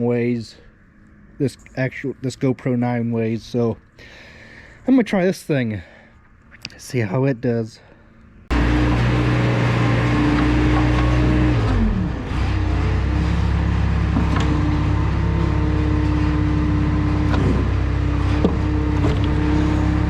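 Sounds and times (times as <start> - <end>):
vehicle engine running: 8.5 - 20.0.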